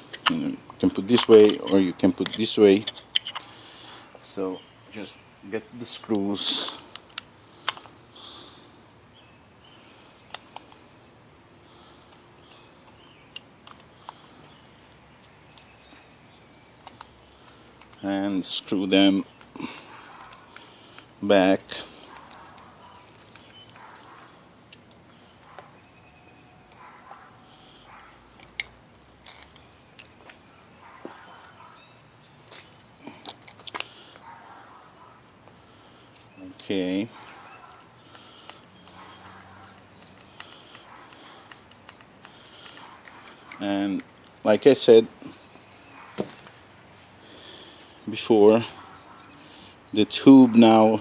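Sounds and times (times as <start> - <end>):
small parts clicking: 28.4 - 30.4.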